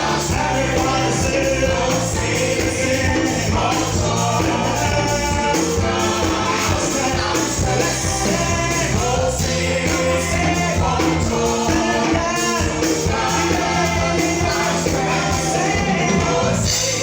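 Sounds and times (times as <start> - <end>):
church band playing: 0.0 - 17.0
voices singing together: 0.0 - 17.0.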